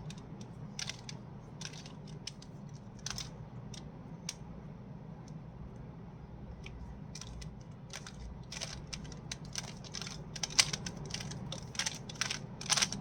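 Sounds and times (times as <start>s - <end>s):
plastic puzzle cube clicking: 0.8s - 3.3s, 7.2s - 13.0s.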